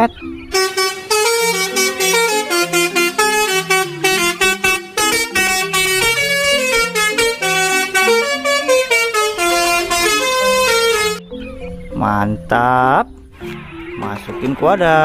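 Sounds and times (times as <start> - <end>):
bus horn playing a tune: 0.5 - 11.2.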